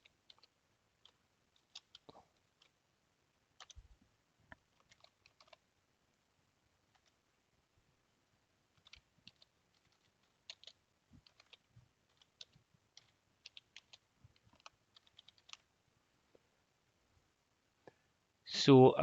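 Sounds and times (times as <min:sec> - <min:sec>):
typing on keyboard: 0:00.0 - 0:02.8, 0:03.6 - 0:03.9, 0:04.6 - 0:05.6, 0:06.9 - 0:07.2, 0:08.8 - 0:15.6.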